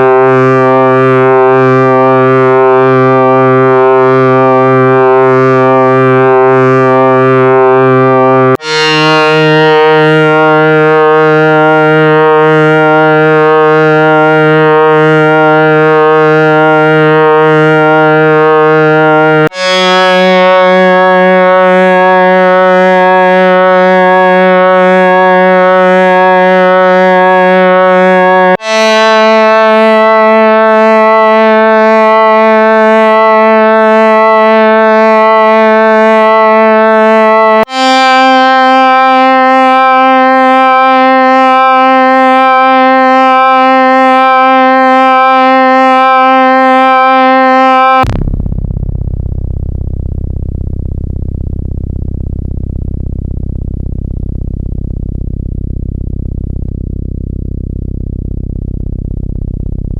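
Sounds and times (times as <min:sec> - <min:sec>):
synthesizer held tones: 0:00.0 - 0:48.2
low rumbling: 0:48.1 - 0:59.9.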